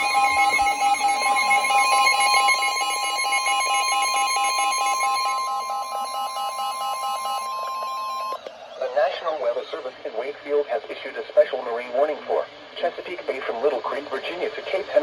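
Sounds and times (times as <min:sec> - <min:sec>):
fast-pulsing beep: 0:00.0 - 0:08.4
steady alert tone: 0:00.0 - 0:08.4.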